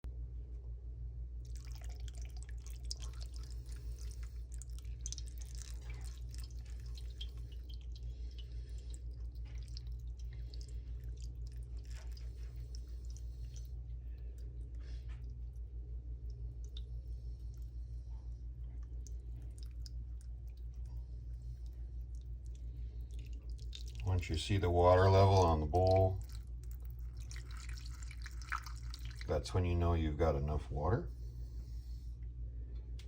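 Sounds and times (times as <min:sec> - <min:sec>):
steady low hum: 0:00.0 - 0:33.0
water pouring and splashing: 0:01.5 - 0:13.7, 0:23.1 - 0:29.6.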